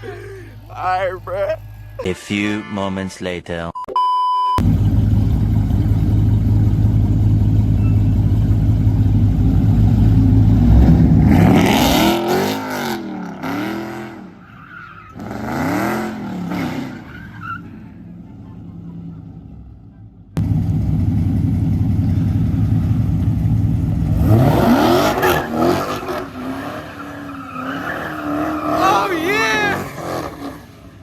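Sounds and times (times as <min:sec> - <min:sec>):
car engine revving: 0:04.6 - 0:14.4, 0:15.1 - 0:17.1, 0:20.4 - 0:31.0
tyres spinning and squealing: 0:13.7 - 0:20.0, 0:24.3 - 0:31.0.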